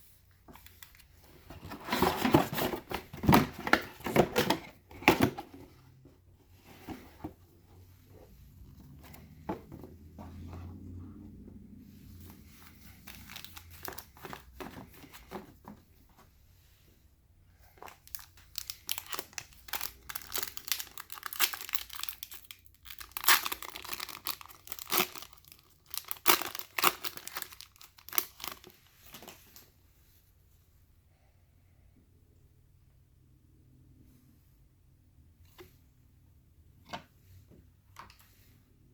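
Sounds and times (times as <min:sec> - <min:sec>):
foil wrapper crinkling and tearing: 0:18.0 - 0:28.7.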